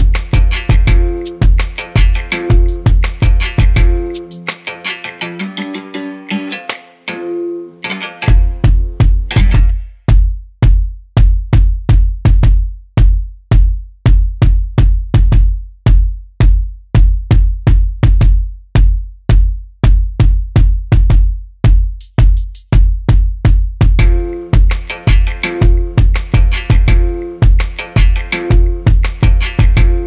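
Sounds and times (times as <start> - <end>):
high hi-hat ticks: 0.0 - 5.3, 22.0 - 22.8, 24.0 - 30.0
hip-hop drum beat: 0.0 - 6.8, 7.9 - 30.0.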